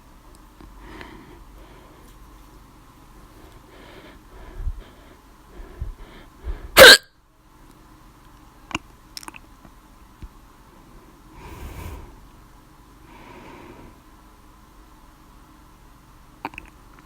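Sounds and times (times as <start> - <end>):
soft breaths: 0.6 - 6.8, 10.8 - 14.3
person hiccuping: 6.8 - 7.0.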